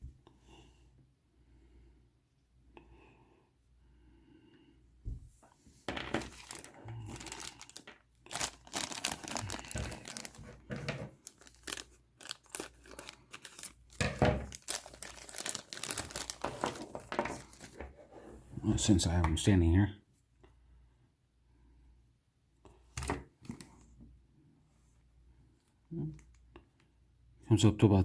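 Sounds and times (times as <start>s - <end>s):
plastic bags crinkling and tearing: 5.9s - 17.8s.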